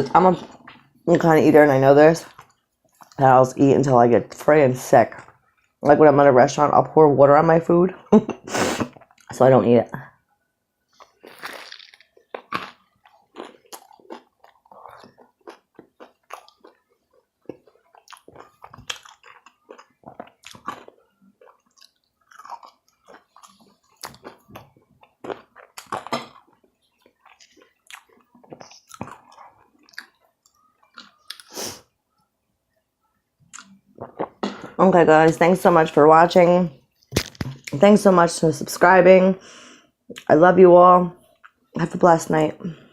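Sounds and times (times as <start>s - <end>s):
person chewing and crunching: 10.9s - 31.9s, 33.4s - 34.7s.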